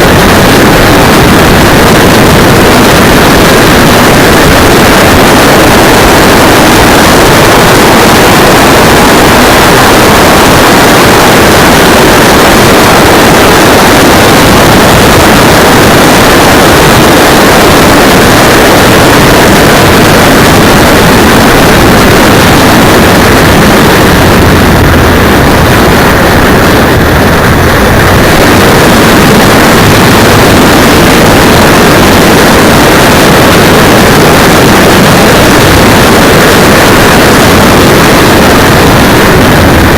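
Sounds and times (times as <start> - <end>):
distorted wind and road noise: 0.0 - 39.9.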